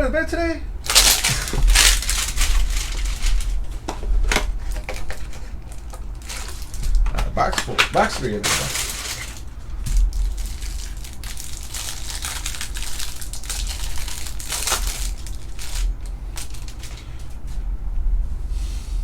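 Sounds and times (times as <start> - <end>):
low steady hum: 0.0 - 19.0
plastic wrapper crinkling and tearing: 0.8 - 17.4.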